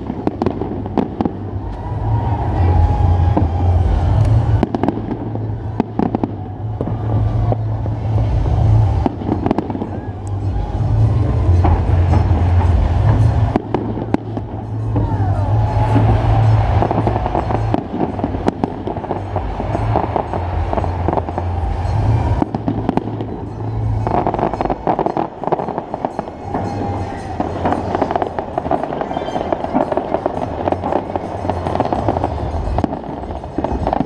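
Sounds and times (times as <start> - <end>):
fireworks booming and cracking: 0.0 - 34.0
falling firework whistle: 24.1 - 32.0.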